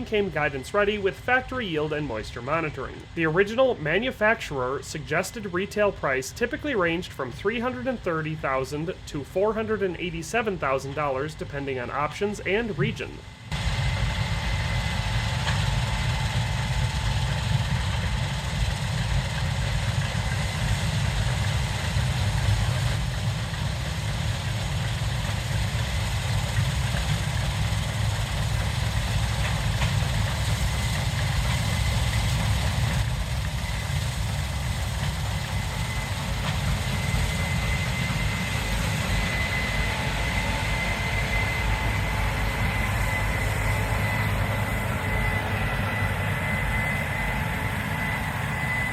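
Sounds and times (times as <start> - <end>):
combine harvester engine drone: 0.0 - 48.9
thin high whine: 35.4 - 48.9.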